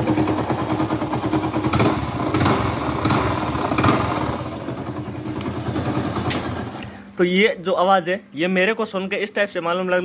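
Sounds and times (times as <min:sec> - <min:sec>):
motorcycle engine idling: 0:00.0 - 0:07.0.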